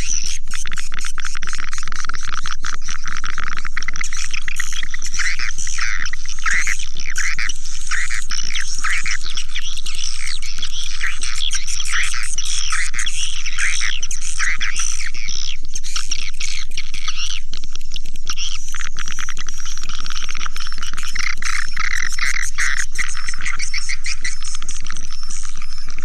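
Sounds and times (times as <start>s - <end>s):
steady low hum: 0.0s - 26.0s
swiftlets chirping and twittering: 0.0s - 26.0s.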